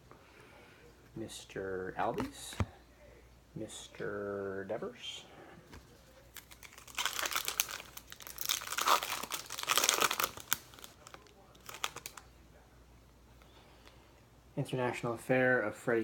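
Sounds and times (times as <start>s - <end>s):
rustle of wrapper and cards: 5.7s - 12.3s
foil wrapper crinkling and tearing: 6.3s - 12.3s.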